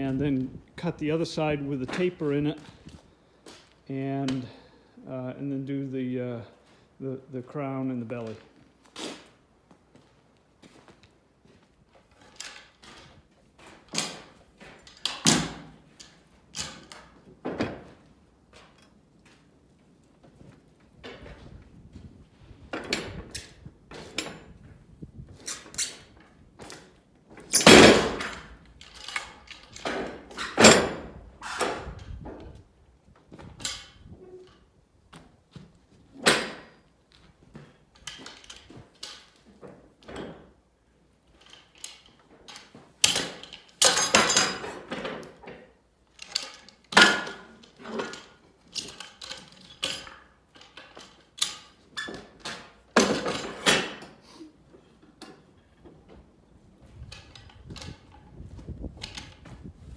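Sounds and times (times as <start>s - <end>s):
wood and metal knocking and clattering: 12.0s - 19.4s, 25.4s - 32.6s, 41.3s - 54.2s.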